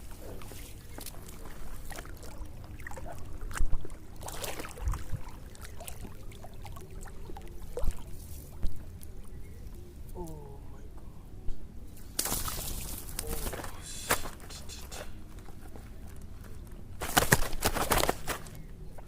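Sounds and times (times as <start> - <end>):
water splashing and sloshing: 0.0 - 9.7, 12.1 - 14.4.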